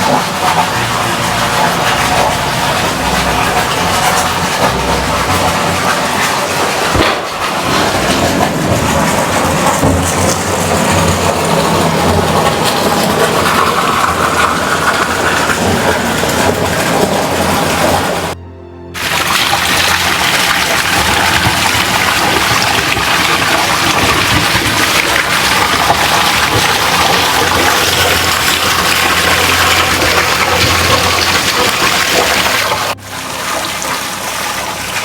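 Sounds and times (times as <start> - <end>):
vehicle engine rumbling: 0.0 - 18.5.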